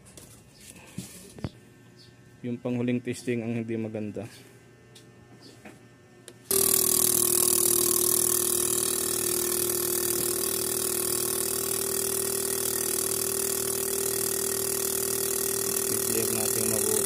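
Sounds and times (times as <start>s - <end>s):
test bench electric hum with hiss: 0.0s - 17.0s
fuel injector rapid pulsing: 6.5s - 17.0s.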